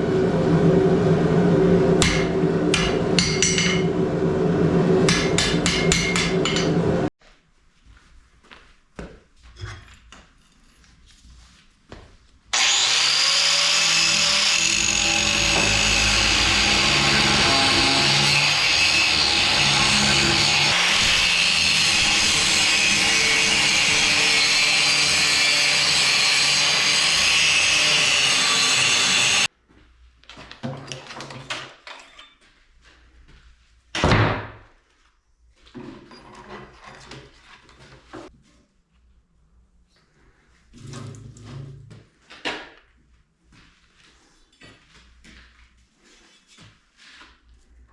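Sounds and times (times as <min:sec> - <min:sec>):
power grinder on steel: 0:12.5 - 0:29.5.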